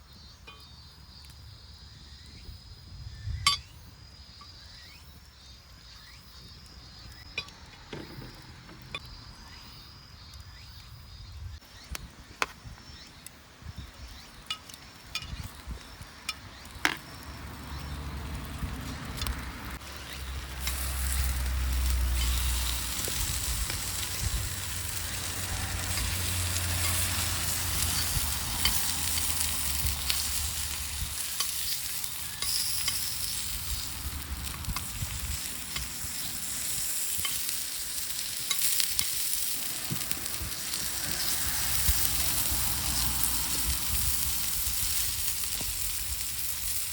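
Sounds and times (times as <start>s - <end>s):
food sizzling in a hot pan: 15.4s - 46.9s.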